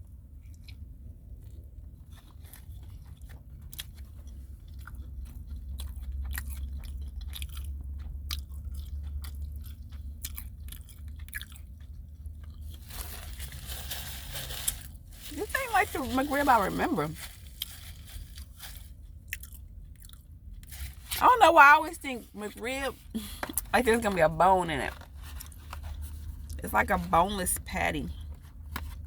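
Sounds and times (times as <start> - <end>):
person chewing close up: 0.0 - 13.2, 17.6 - 21.2, 24.9 - 26.6.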